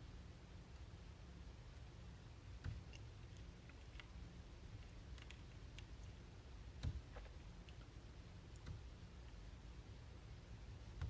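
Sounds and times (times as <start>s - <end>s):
room hum: 0.0s - 11.0s
faint clicks and taps: 2.6s - 6.2s, 8.5s - 9.4s.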